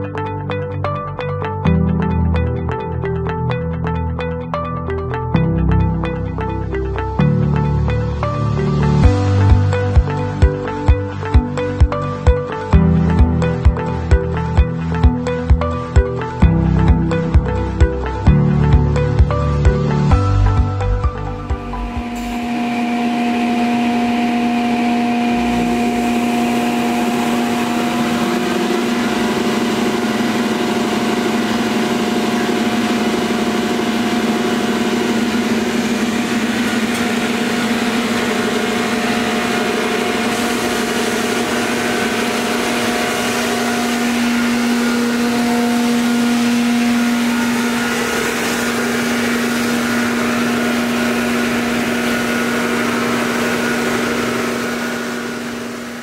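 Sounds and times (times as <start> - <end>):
belt sander hum: 21.5 - 56.0.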